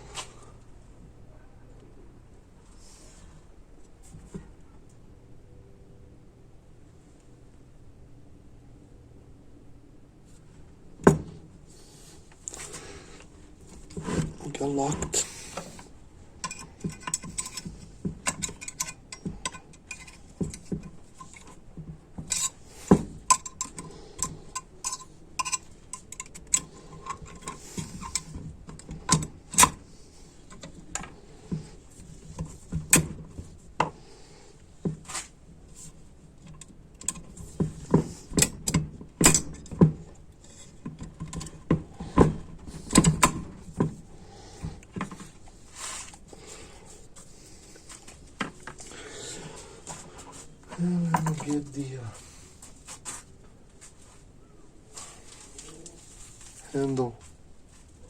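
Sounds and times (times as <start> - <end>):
metal parts clinking: 16.4 - 21.6, 22.2 - 22.6, 23.2 - 29.8.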